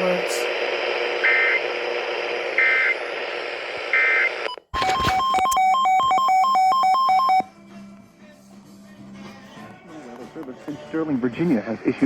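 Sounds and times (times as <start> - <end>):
radio static: 0.0 - 5.2.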